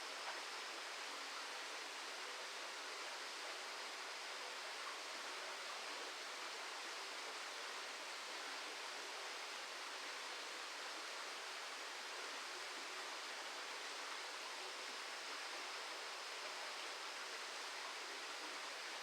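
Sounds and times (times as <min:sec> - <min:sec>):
steady hiss: 0:00.0 - 0:19.0.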